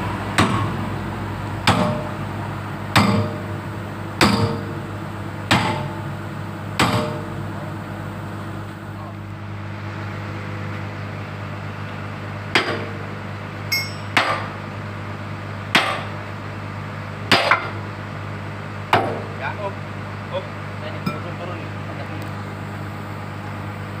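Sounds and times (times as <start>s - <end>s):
excavator engine idling: 0.0s - 24.0s
metallic ring: 13.7s - 14.2s.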